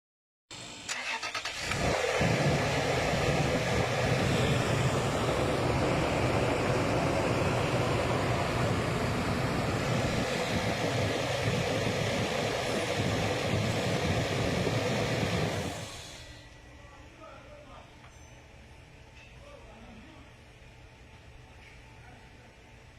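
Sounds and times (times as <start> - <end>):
car engine cranking and running: 0.9 - 16.2.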